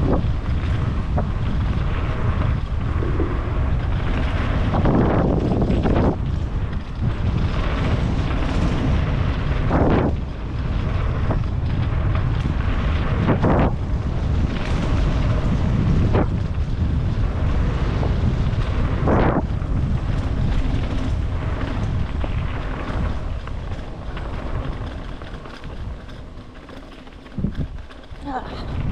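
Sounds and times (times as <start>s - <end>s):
moving vehicle rumble: 0.0s - 28.9s
wind buffeting microphone: 0.0s - 28.9s.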